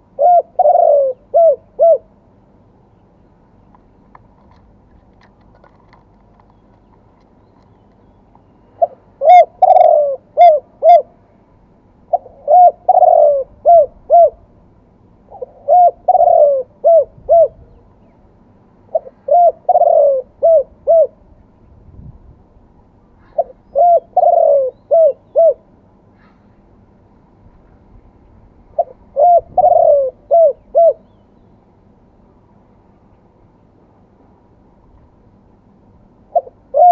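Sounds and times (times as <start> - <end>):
dove cooing: 0.0 - 2.1, 8.7 - 11.2, 12.1 - 14.5, 15.3 - 17.8, 18.9 - 21.2, 23.3 - 25.7, 28.7 - 31.2, 36.3 - 36.9.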